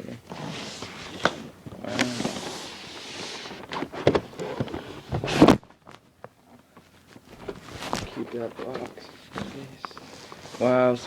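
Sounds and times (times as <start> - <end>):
cardboard rustling: 0.3 - 6.1, 6.8 - 11.0.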